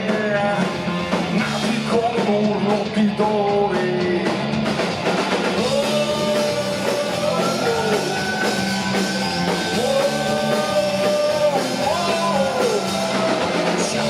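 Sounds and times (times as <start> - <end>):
rock band playing: 0.0 - 14.0
person singing: 5.6 - 14.0.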